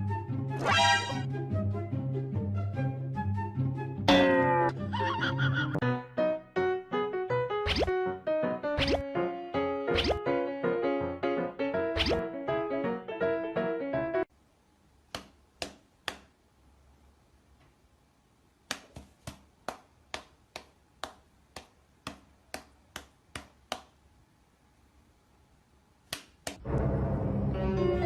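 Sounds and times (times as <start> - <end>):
music: 0.0 - 14.3, 26.6 - 28.0.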